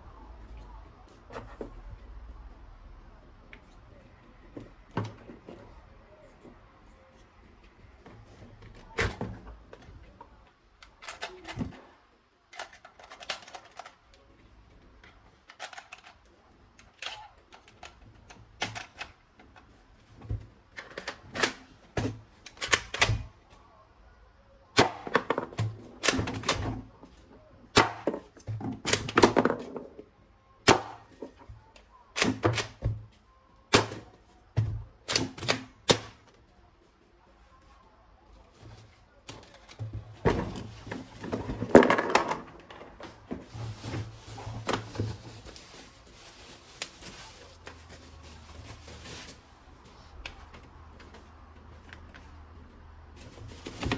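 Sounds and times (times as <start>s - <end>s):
plastic parts clicking and knocking: 8.0s - 23.4s, 24.8s - 36.4s, 38.6s - 45.3s.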